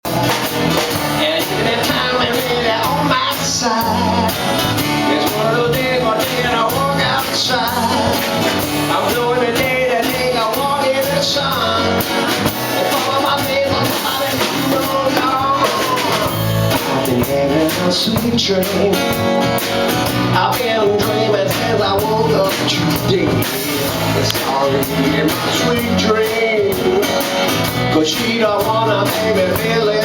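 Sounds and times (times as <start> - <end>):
bass notes: 0.0 - 30.0
drums keeping a steady beat: 0.0 - 30.0
bending melody line: 0.2 - 19.4.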